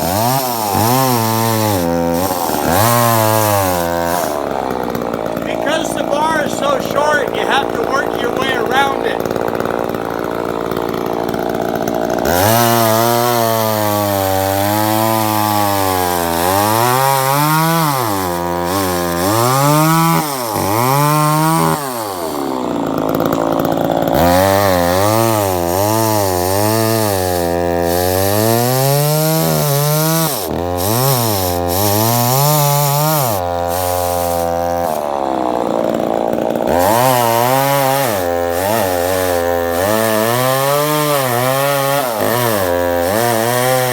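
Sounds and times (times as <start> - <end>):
chainsaw cutting wood: 0.0 - 43.9.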